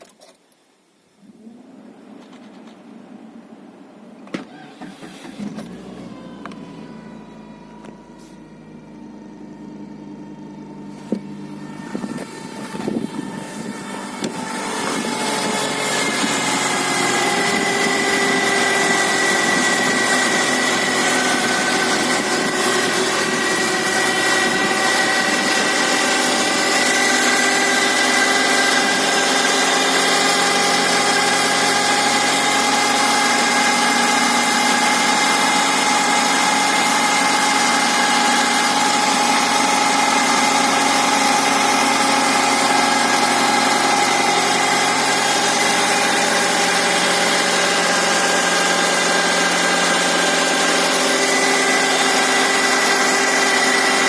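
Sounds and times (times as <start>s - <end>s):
car engine idling: 1.2s - 54.0s
high engine whistle: 4.4s - 54.0s.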